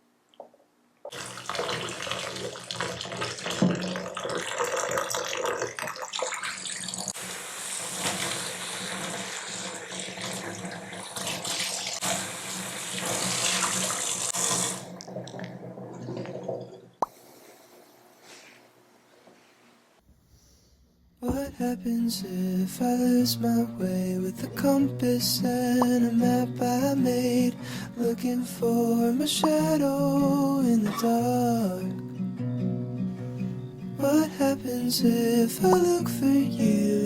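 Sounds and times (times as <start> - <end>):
tap water running into sink: 1.1 - 16.5.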